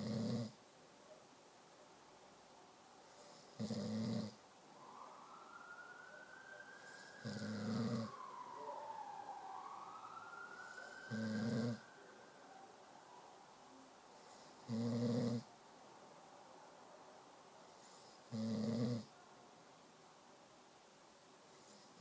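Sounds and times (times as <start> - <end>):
loud snores: 0.0 - 0.6, 3.2 - 4.4, 7.2 - 8.1, 11.1 - 11.8, 14.3 - 15.5, 17.8 - 19.1
wailing tone: 6.1 - 12.8.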